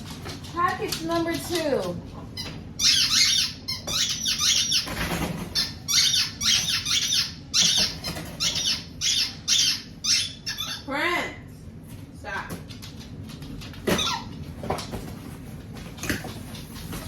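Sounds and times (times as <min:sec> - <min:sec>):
dog toy squeaking: 0:02.4 - 0:10.9, 0:13.9 - 0:14.4.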